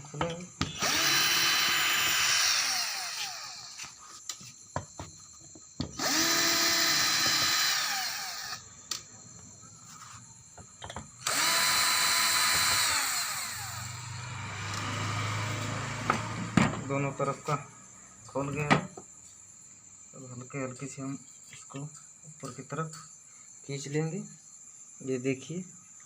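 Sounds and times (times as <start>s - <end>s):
electric screwdriver whining: 0.6s - 3.9s, 5.9s - 8.6s, 11.2s - 14.9s.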